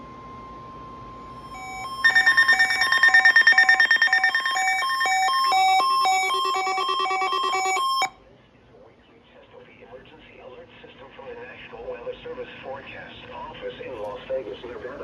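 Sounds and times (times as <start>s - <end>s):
faint steady tone: 0.0s - 8.2s
electronic beeping alert tune: 1.4s - 8.1s.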